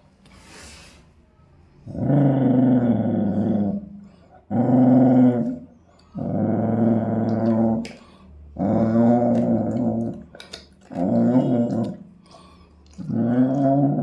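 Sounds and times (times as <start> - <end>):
dog growling: 1.8 - 14.0.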